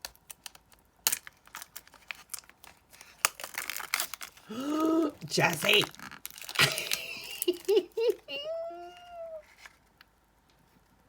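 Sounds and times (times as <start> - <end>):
plastic packaging crackling: 0.0 - 8.2.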